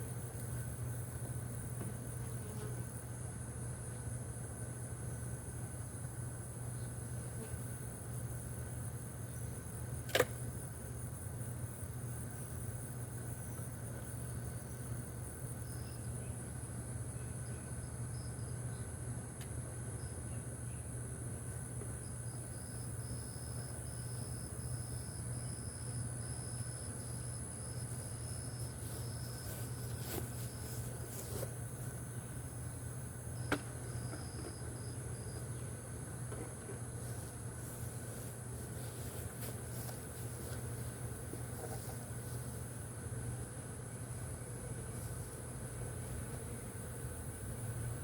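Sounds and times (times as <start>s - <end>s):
insect buzzing: 0.0s - 3.2s, 22.3s - 48.0s
sharp click: 10.0s - 10.4s.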